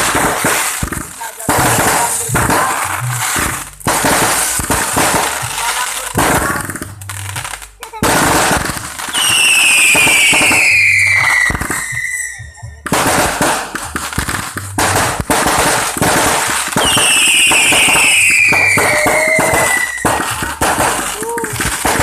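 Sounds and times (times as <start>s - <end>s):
firecrackers cracking and banging: 0.0s - 22.0s
whistling fireworks: 0.0s - 22.0s.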